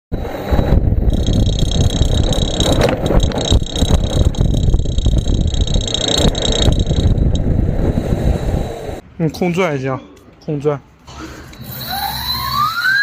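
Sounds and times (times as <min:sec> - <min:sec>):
electric motor whining and rattling: 0:00.4 - 0:09.0, 0:11.5 - 0:13.0.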